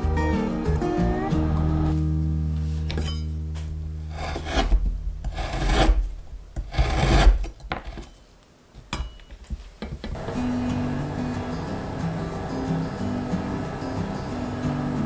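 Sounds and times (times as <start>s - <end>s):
background music: 0.0s - 4.7s
rasping scraping strokes: 2.6s - 8.2s.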